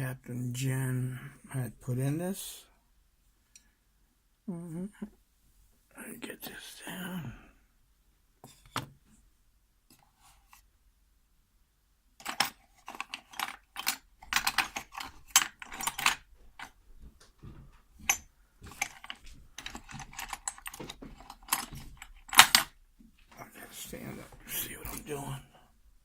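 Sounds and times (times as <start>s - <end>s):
metallic clicks and rattles of padlock: 12.2s - 16.8s, 18.1s - 22.8s.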